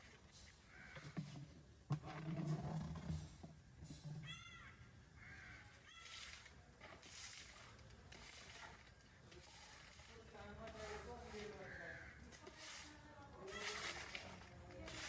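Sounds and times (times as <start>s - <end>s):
faint bird cawing: 0.6s - 1.2s, 4.2s - 6.4s, 11.6s - 12.3s.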